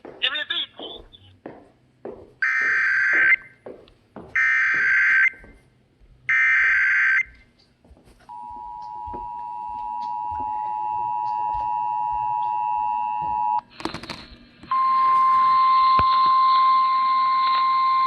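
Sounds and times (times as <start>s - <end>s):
two-tone attention signal: 14.7s - 18.0s.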